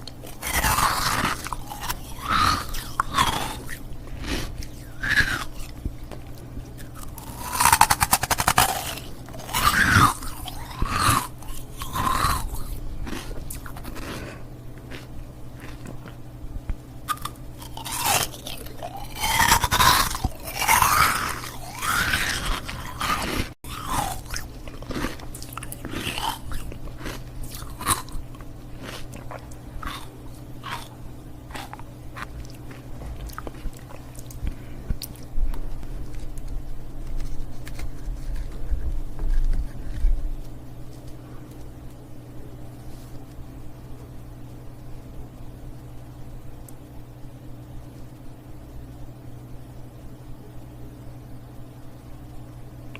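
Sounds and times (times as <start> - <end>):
chewing clicks: 0.0 - 38.6
ice cubes crunching: 0.2 - 5.8, 6.7 - 16.2, 17.1 - 30.9, 31.5 - 34.4.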